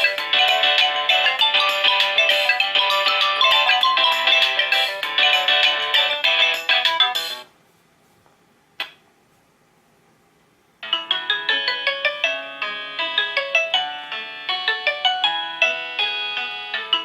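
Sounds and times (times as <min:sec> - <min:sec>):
melodic phone ringtone: 0:00.0 - 0:07.4, 0:10.8 - 0:17.0.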